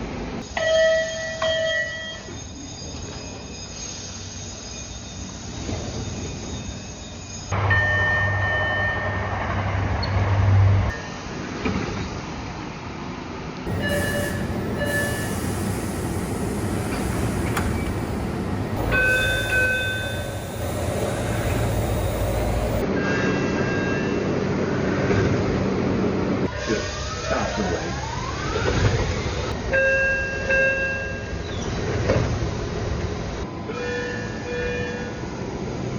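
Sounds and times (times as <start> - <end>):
train hum and rumble: 0.0 - 35.9
electronic door chimes: 17.5 - 22.8.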